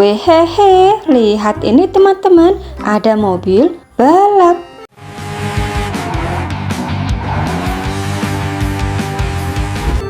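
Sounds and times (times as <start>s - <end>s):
background music with steady beat: 0.3s - 10.0s
race car engine: 5.0s - 10.0s
tire squeal: 5.0s - 10.0s.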